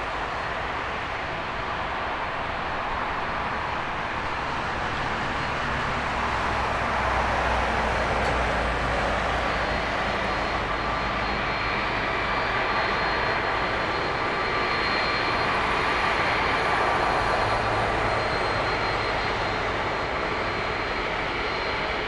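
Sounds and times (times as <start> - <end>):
jet engine rumble and rush: 0.0 - 22.0
jet engine whine: 0.0 - 22.0.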